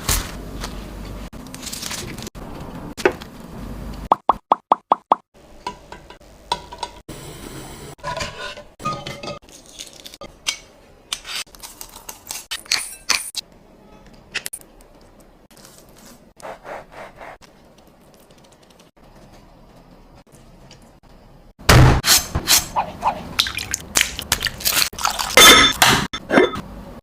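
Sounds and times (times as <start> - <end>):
utensils and dishes clinking: 8.0 - 11.5, 12.1 - 13.4, 25.2 - 26.7.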